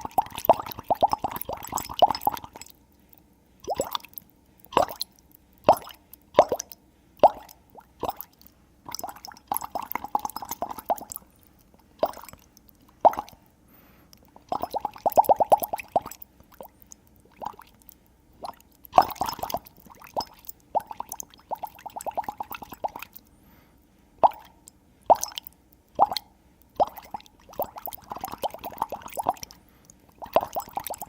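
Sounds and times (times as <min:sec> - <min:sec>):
watery bubble pops: 0:03.7 - 0:04.1, 0:04.7 - 0:05.1, 0:05.7 - 0:08.3, 0:14.4 - 0:16.7, 0:18.4 - 0:23.1, 0:30.2 - 0:31.0.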